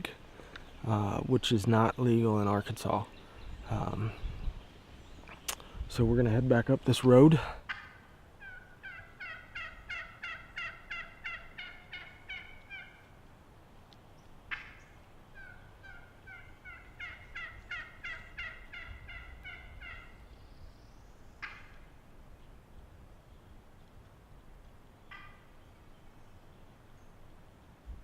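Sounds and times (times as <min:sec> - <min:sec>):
wild turkey yelping: 0:07.7 - 0:13.2, 0:14.5 - 0:20.2, 0:21.4 - 0:21.8, 0:25.1 - 0:25.6.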